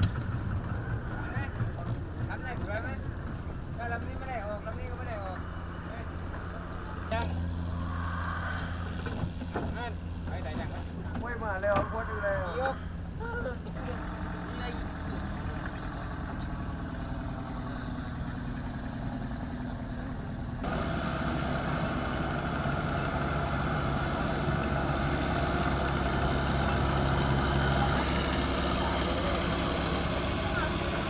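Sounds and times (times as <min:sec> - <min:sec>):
engine running: 0:00.0 - 0:31.0.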